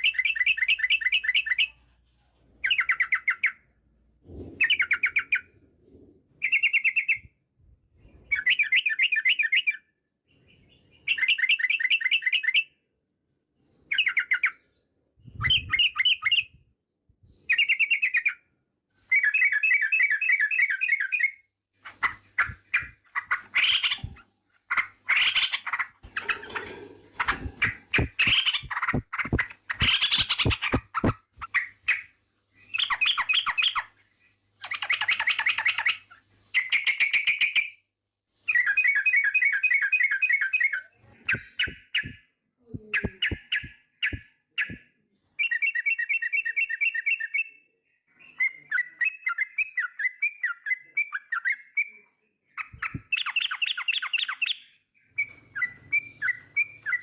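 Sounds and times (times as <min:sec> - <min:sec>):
bulbul chattering song: 0:38.5 - 0:44.8.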